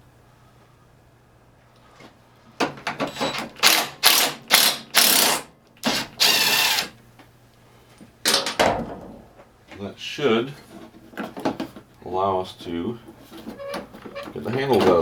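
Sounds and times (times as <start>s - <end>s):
ratchet wrench clicking: 3.6s - 5.4s.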